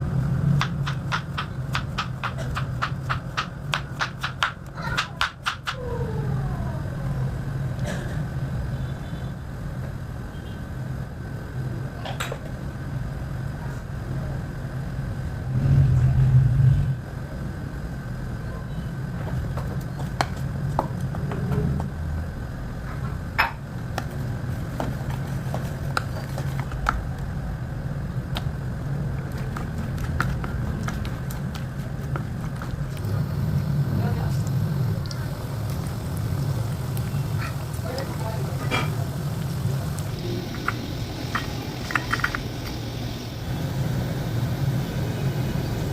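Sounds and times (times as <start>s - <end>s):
steady low hum: 5.8s - 45.9s
utensils clicking and clinking: 40.5s - 42.5s.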